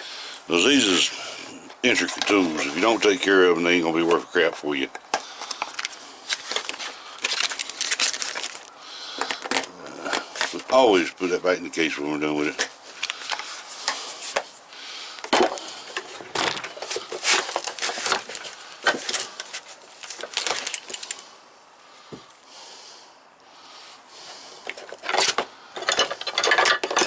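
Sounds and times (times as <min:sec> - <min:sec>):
tools clicking and rattling: 0:04.8 - 0:10.7, 0:15.2 - 0:21.2, 0:24.6 - 0:27.0.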